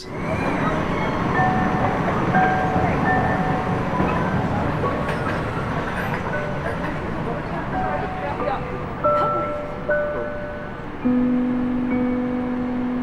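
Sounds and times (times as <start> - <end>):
tram rumbling on rails: 0.0 - 13.0.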